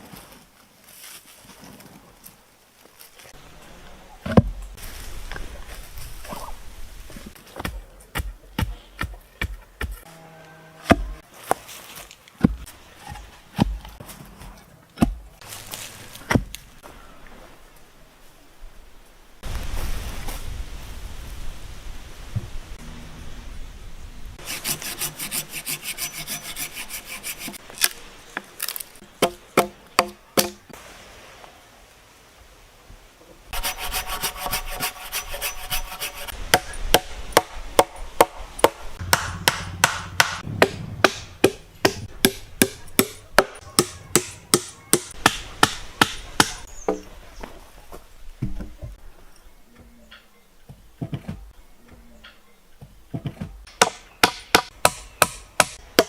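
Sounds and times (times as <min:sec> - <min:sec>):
hand saw strokes: 0:24.4 - 0:27.6, 0:33.5 - 0:36.7
sharp strikes on wood: 0:29.2 - 0:30.6, 0:36.5 - 0:46.6, 0:53.7 - 0:56.0.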